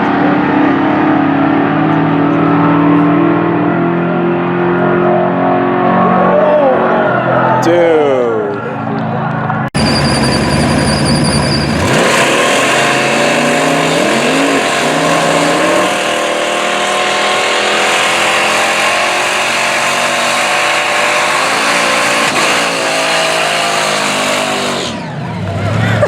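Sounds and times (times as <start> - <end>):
drag racing engines accelerating: 0.0 - 26.0.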